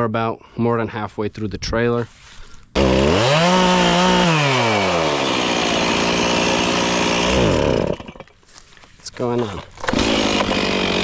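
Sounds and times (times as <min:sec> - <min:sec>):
chainsaw revving: 0:02.8 - 0:08.4, 0:09.3 - 0:11.0.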